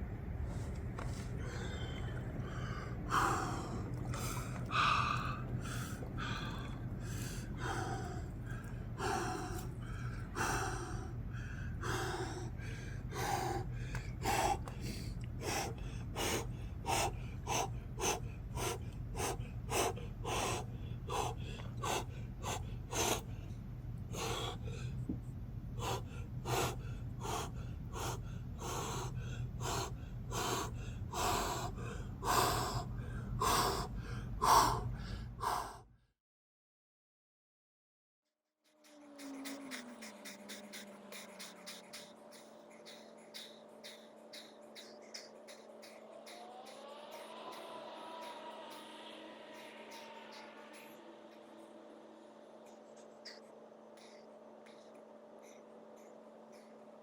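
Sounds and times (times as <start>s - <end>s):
man gasping breaths: 0.5s - 35.9s.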